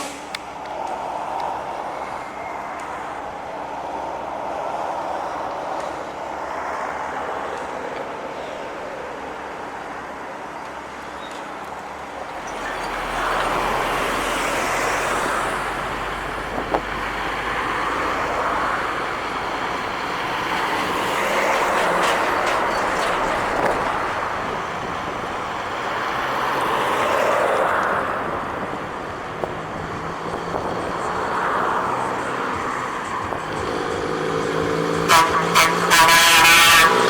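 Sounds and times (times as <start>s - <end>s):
passing traffic: 0.0s - 37.0s
deep vehicle rumble: 12.3s - 26.5s.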